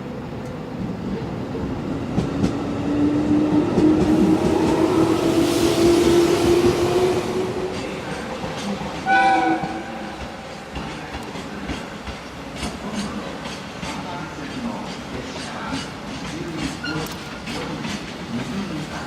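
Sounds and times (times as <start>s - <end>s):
train running past: 0.0s - 19.0s
train horn blast: 9.0s - 10.2s.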